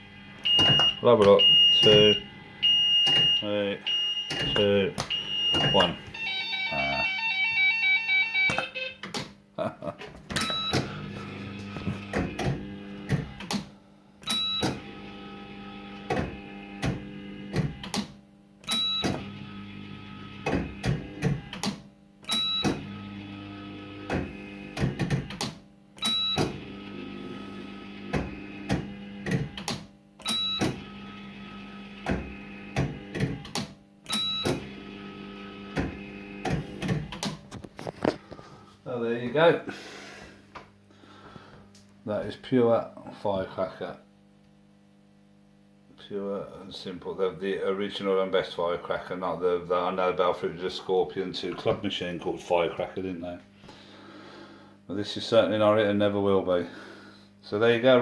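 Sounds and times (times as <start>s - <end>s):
beeping tones: 0.4s - 9.1s, 10.4s - 11.1s.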